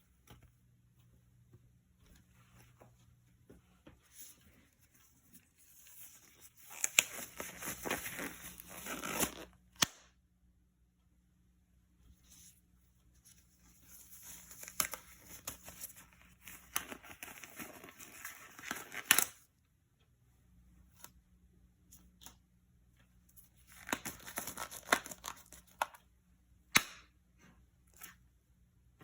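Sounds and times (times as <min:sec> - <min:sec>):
packaging tearing and crinkling: 0:06.6 - 0:09.5, 0:23.8 - 0:25.6.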